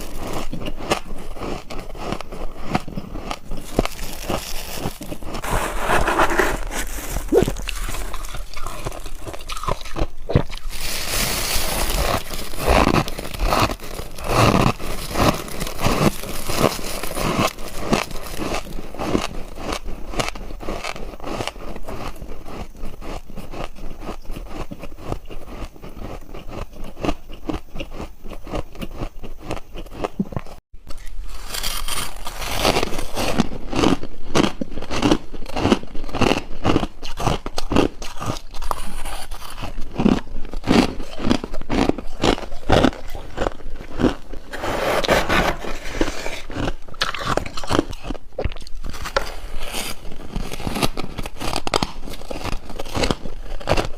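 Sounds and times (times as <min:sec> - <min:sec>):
ice being crunched: 0:02.2 - 0:19.8, 0:31.0 - 0:34.0.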